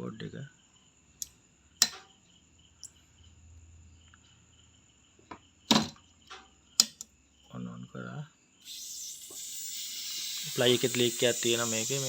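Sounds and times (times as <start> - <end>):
high-pitched crt whine: 8.6 - 12.0.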